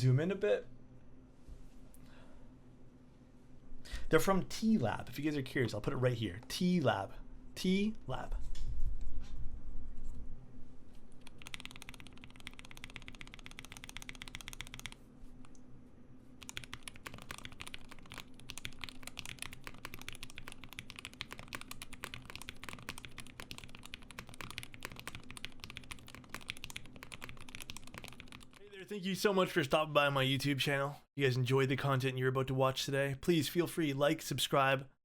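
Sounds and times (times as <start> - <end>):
mechanical keyboard typing: 11.2 - 15.0, 16.4 - 28.6.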